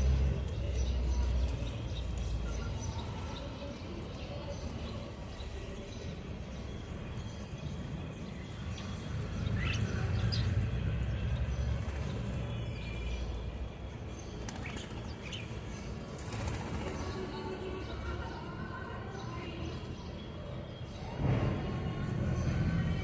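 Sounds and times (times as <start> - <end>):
birds chirping: 0.0 - 23.0
wings flapping: 16.1 - 17.3.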